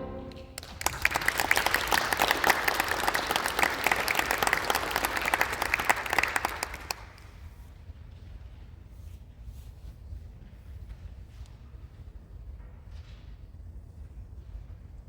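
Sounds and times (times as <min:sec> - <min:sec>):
audience applauding: 0:00.0 - 0:07.2.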